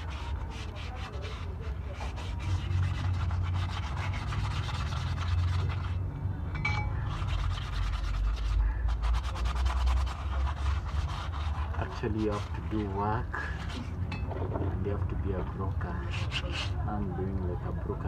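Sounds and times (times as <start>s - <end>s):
hand rubbing strokes: 0.0s - 6.0s, 7.1s - 14.0s, 16.0s - 16.8s.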